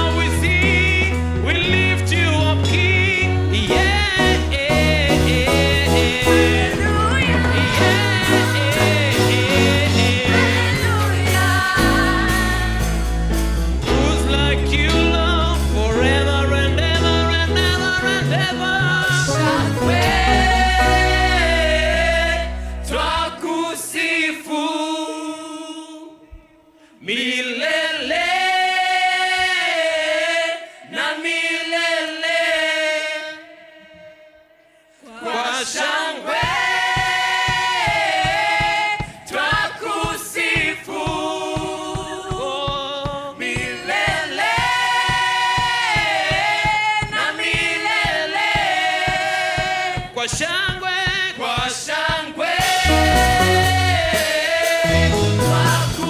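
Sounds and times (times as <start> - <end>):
group of voices singing: 0.0 - 56.0
steady beat: 3.7 - 14.0, 52.4 - 56.0.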